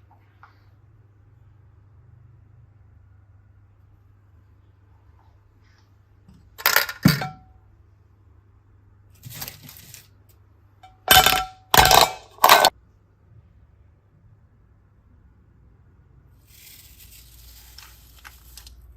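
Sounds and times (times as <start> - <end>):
small hard objects clattering: 11.0 - 12.7.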